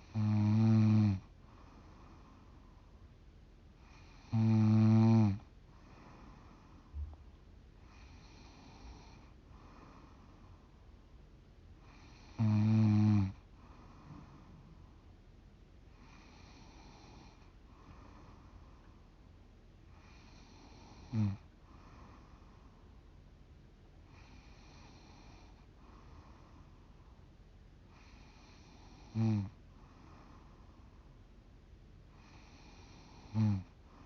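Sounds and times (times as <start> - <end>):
woman breathing noisily in sleep: 0.0 - 3.1, 5.7 - 7.2, 7.8 - 10.9, 11.8 - 15.1, 15.9 - 19.2, 19.9 - 23.0, 24.0 - 27.3, 27.9 - 31.2, 32.1 - 34.0.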